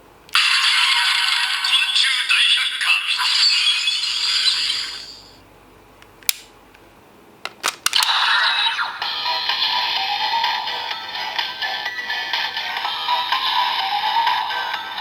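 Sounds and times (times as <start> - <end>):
toy electronic sound effects: 0.3 - 5.4, 7.9 - 10.3
sharp plastic clicks: 6.1 - 6.5, 7.4 - 8.1.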